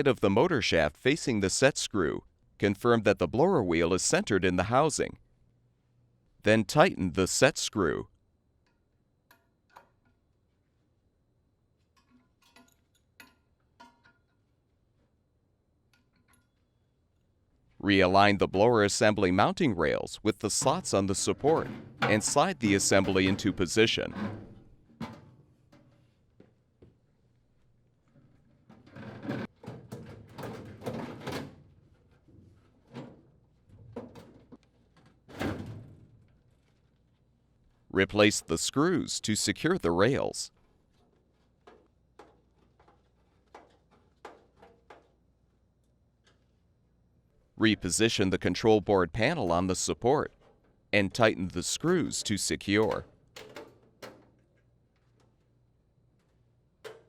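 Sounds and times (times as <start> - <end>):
metal scraping and clunking: 20.4 - 26.1.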